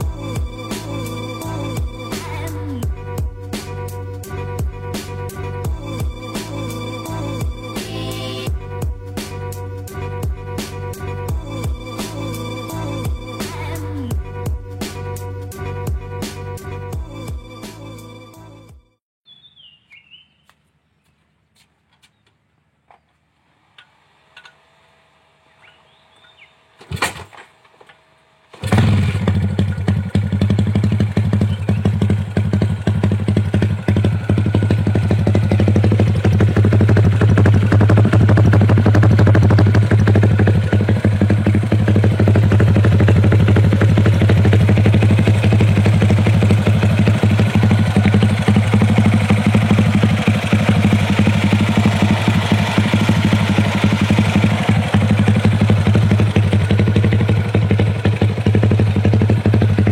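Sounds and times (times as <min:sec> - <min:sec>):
motorcycle engine idling: 0:28.5 - 0:59.9.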